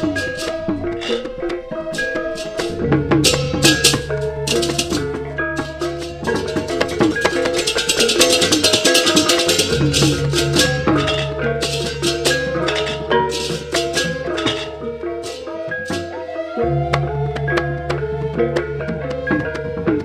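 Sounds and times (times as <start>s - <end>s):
low hum: 0.0s - 15.4s
cymbals clashing: 0.0s - 19.8s
metallophones interlocking notes: 0.0s - 20.0s.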